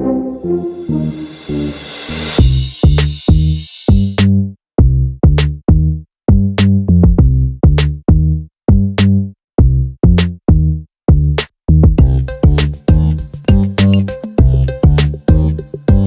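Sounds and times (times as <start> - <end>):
electronic music with drum machine: 12.0 - 16.0.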